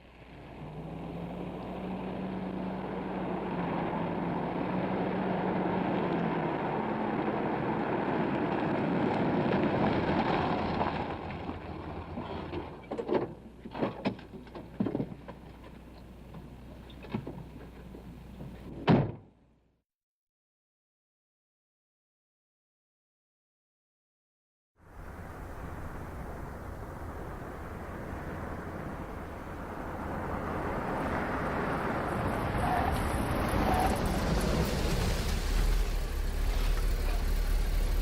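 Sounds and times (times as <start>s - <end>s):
loud thump: 18.8s - 19.2s
rushing engine-like noise: 24.8s - 38.0s.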